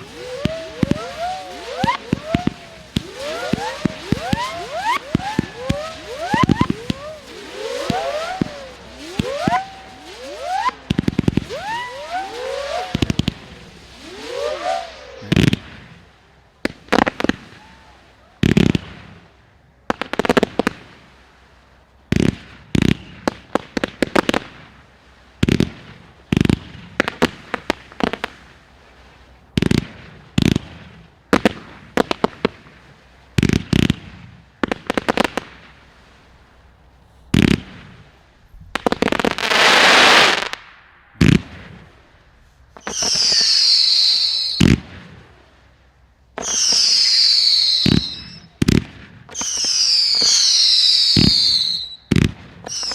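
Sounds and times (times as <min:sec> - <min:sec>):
firework shot pops: 0:00.0 - 0:19.2, 0:33.4 - 0:45.6, 0:46.3 - 0:52.9
firework whistles: 0:00.0 - 0:19.4, 0:20.1 - 0:52.9
firework hissing crackle: 0:00.0 - 0:52.9.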